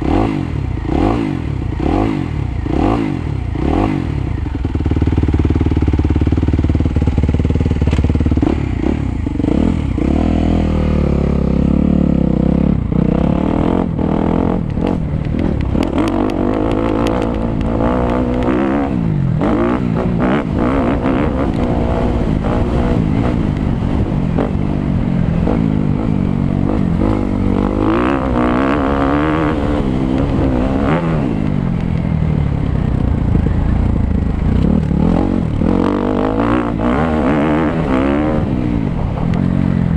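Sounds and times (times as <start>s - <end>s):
motocross bike engine revving: 0.0s - 31.8s, 33.9s - 39.8s.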